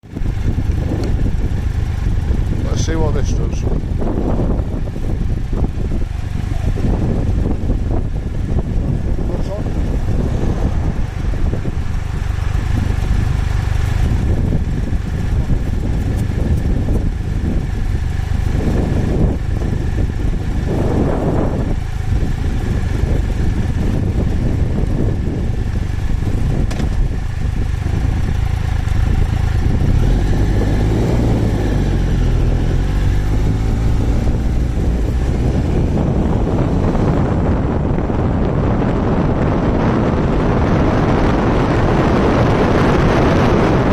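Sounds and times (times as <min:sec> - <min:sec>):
motorcycle engine: 0:00.0 - 0:43.9
wind buffeting on microphone: 0:00.0 - 0:43.9.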